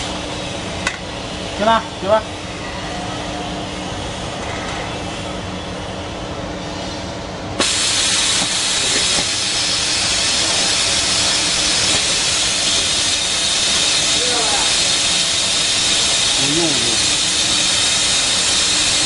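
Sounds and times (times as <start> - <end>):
machinery humming: 0.0 - 19.0
rushing air hiss: 6.5 - 19.0.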